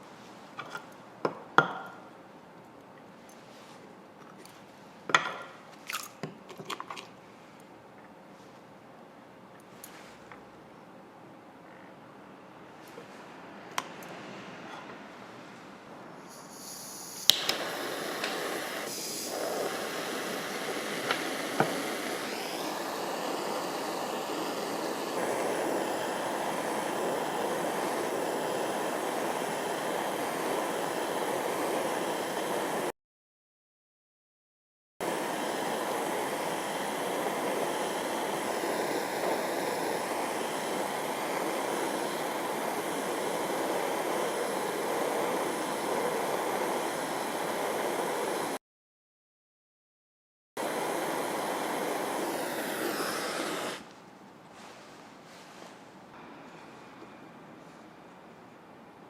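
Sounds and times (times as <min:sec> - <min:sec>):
torch flame hissing: 0:16.2 - 0:32.9, 0:35.0 - 0:48.6, 0:50.6 - 0:53.9.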